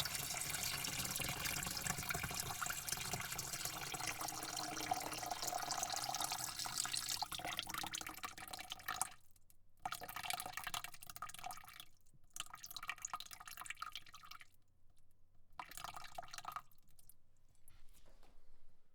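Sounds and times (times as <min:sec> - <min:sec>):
water spraying into a bucket: 0:00.0 - 0:07.4.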